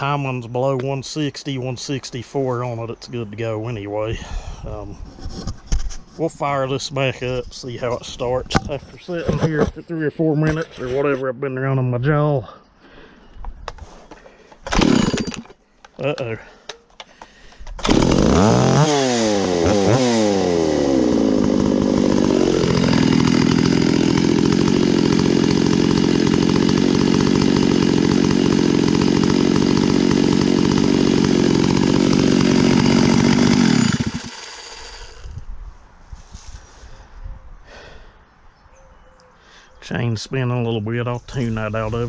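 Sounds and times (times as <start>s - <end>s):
chainsaw revving and idling: 14.7s - 15.4s, 17.8s - 35.4s.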